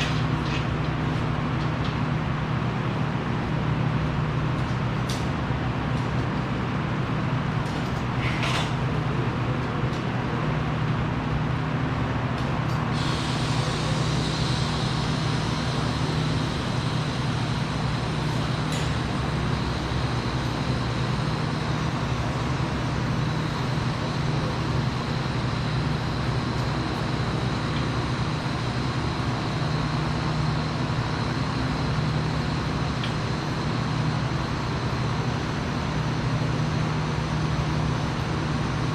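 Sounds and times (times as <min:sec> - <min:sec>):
machinery hum: 0:00.0 - 0:38.9
high even whine: 0:12.9 - 0:36.8.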